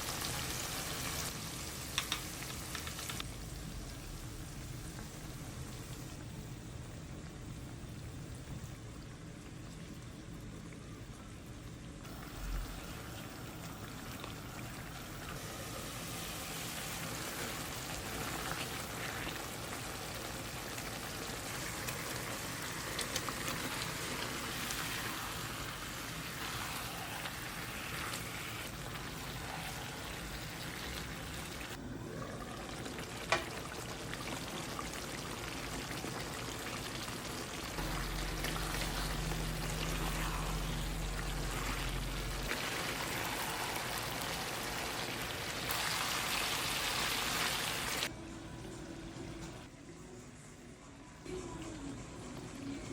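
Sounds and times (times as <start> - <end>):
food sizzling in a pan: 0.0 - 6.1, 12.1 - 48.1.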